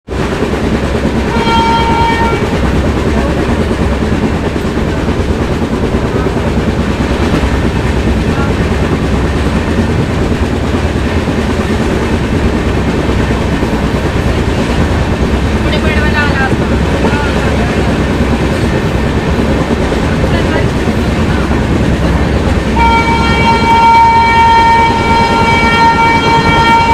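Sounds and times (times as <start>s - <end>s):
passenger train running at speed: 0.0s - 26.9s
electric locomotive horn: 1.2s - 2.6s, 22.7s - 26.9s.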